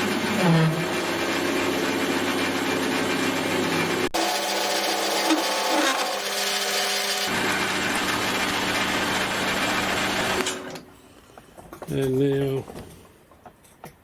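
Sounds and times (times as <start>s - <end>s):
power tool cutting metal: 0.0s - 10.8s.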